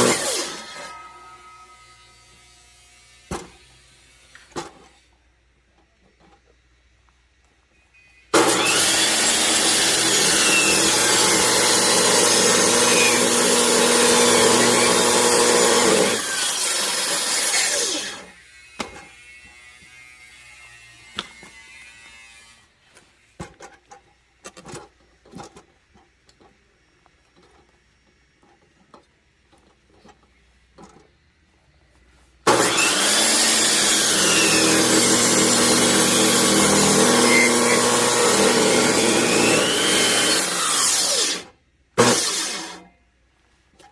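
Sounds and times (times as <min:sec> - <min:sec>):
chainsaw cutting logs: 0:00.0 - 0:01.3, 0:08.3 - 0:22.6, 0:32.5 - 0:42.9.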